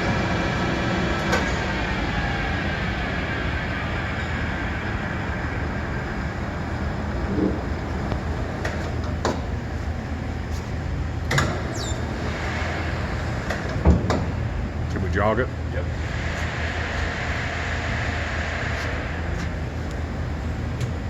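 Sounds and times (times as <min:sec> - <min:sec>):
low machinery hum: 0:00.0 - 0:21.0
sharp clicks and knocks: 0:07.4 - 0:09.5
falling squeak: 0:11.7 - 0:12.1.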